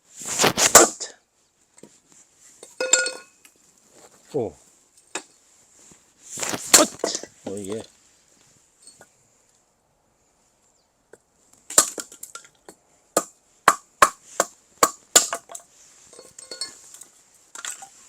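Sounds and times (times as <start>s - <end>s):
firewood knocking: 13.2s - 15.6s.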